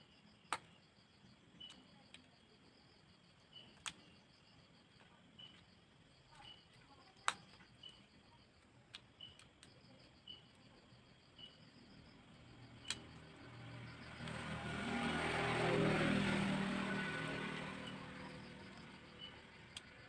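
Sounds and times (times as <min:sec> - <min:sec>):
sharp small clicks: 0:00.5 - 0:00.8, 0:03.5 - 0:04.2, 0:07.2 - 0:08.0, 0:08.6 - 0:09.9, 0:12.7 - 0:13.4, 0:19.2 - 0:20.0
vehicle passing by: 0:12.2 - 0:20.0.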